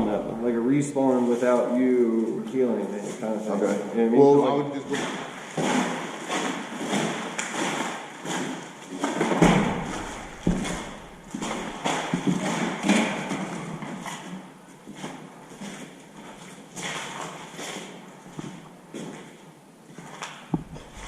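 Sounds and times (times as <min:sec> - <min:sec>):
heavy thud: 0:09.4 - 0:12.3, 0:20.6 - 0:21.0
footsteps on hard floor: 0:09.4 - 0:12.5, 0:20.5 - 0:21.0.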